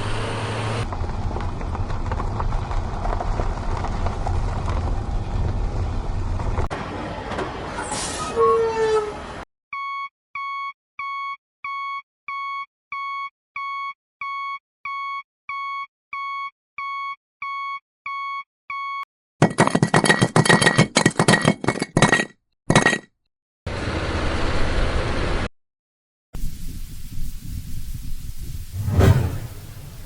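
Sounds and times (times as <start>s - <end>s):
vehicle reversing alarm beeping: 9.8s - 19.0s
steady rushing noise: 28.7s - 30.0s.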